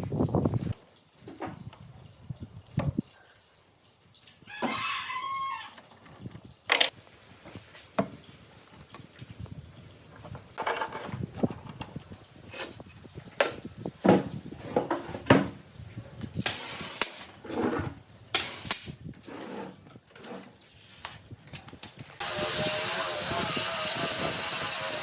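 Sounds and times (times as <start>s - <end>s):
wood and tools clattering: 5.9s - 7.0s, 10.1s - 25.0s.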